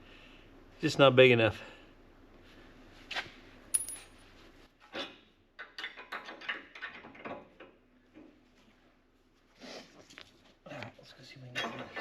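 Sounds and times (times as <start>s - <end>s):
metal clink: 3.7s - 4.2s
tools clicking and clattering: 3.7s - 4.2s, 4.9s - 7.8s.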